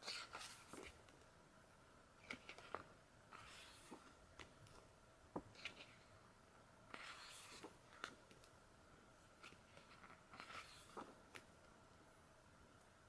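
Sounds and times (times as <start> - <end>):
book pages turning: 0.0 - 1.2, 2.2 - 6.1, 6.9 - 8.5, 9.3 - 11.5.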